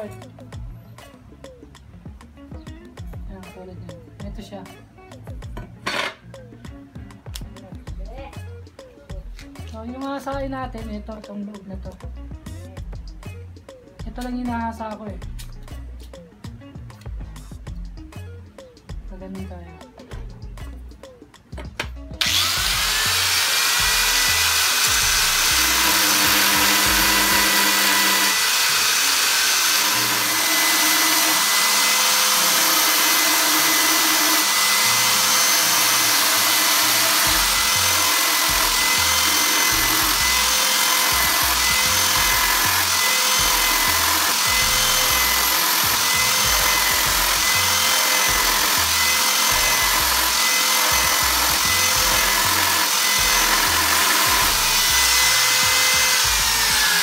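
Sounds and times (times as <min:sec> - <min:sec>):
background music with steady beat: 0:00.0 - 0:57.0
angle grinder whining: 0:22.2 - 0:57.0.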